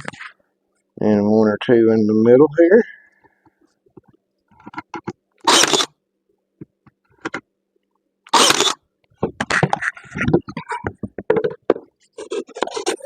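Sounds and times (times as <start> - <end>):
brad nailer firing: 5.4 - 5.9, 8.3 - 8.8.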